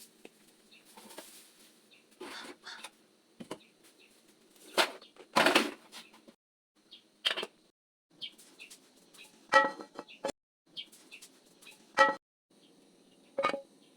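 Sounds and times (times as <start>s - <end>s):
rustles and knocks of handling: 0.0s - 2.6s.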